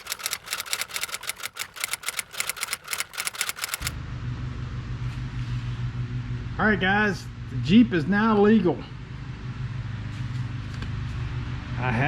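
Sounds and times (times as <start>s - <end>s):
typewriter clicks: 0.0s - 4.0s
steady low hum: 1.8s - 12.0s.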